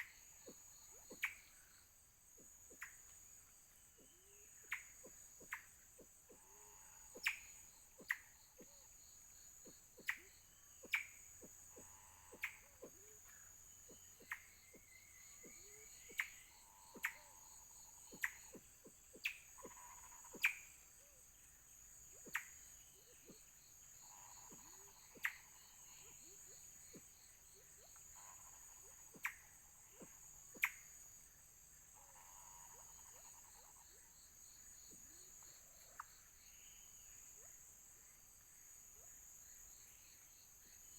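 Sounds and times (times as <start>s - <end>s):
high insect chorus: 0.0s - 40.9s
faint low animal calls: 3.9s - 21.4s, 22.1s - 31.0s, 31.8s - 37.7s.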